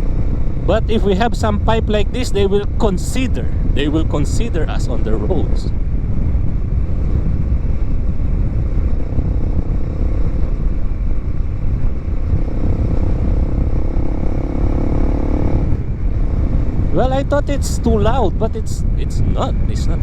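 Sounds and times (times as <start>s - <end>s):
steady hum: 0.0s - 14.4s, 15.4s - 20.0s
motorcycle engine running: 5.7s - 18.4s.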